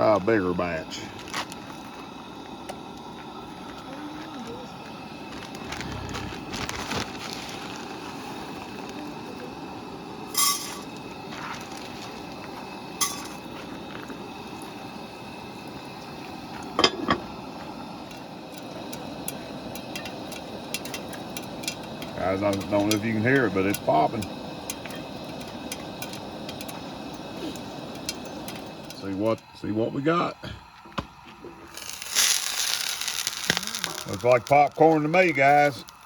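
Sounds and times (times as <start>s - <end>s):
popcorn popping: 0.0s - 29.6s, 30.2s - 36.0s
steady low hiss: 0.0s - 36.0s.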